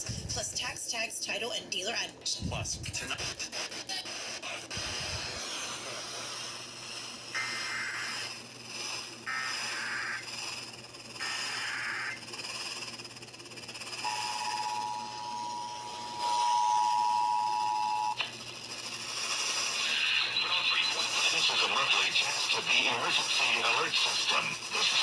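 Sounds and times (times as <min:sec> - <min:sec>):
modem-like data screeches: 0:00.3 - 0:25.0
radio hiss: 0:02.4 - 0:12.7, 0:18.0 - 0:25.0
two-tone attention signal: 0:14.0 - 0:18.2.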